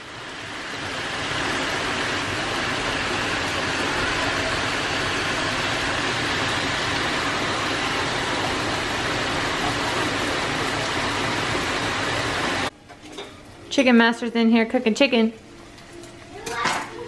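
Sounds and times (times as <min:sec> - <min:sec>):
heavy rain pouring: 0:00.0 - 0:12.7.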